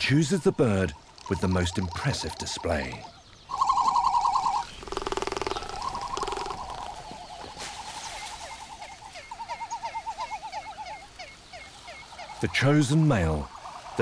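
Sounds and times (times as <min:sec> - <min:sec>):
warbling bird calls: 0:00.0 - 0:14.0
bird rattling drumming: 0:03.5 - 0:07.6.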